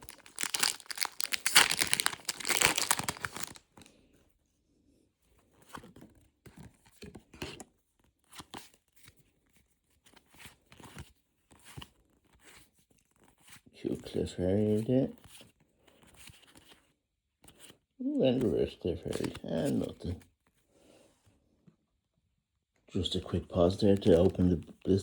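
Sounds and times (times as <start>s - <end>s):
foil wrapper tearing: 0.0s - 3.9s
wrapper and cards crinkling: 0.0s - 3.9s, 18.4s - 20.2s, 23.3s - 25.0s.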